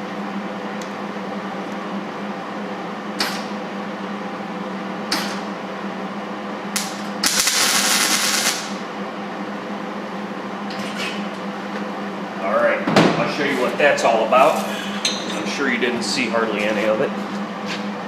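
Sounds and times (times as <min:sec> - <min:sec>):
steady hum: 0:00.0 - 0:18.0
welder arc bursts: 0:06.8 - 0:08.8.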